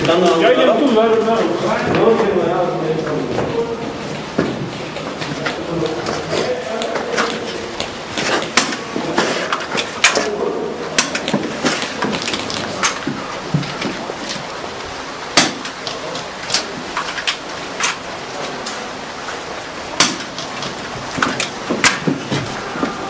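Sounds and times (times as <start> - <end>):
pellets striking: 5.9 - 13.8, 15.3 - 16.7, 19.9 - 22.9.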